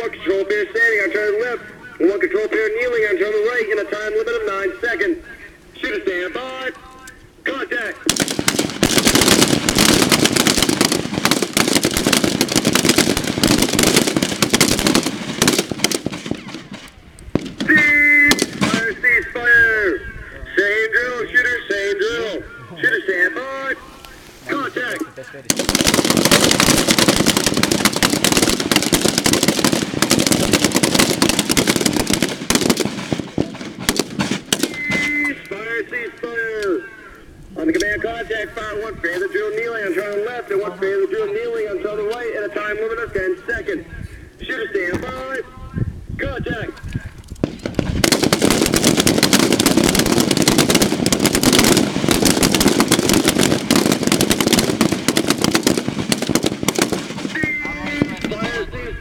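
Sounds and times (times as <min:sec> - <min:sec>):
rifles firing: 0:08.1 - 0:19.0, 0:25.5 - 0:35.3, 0:47.4 - 0:58.6.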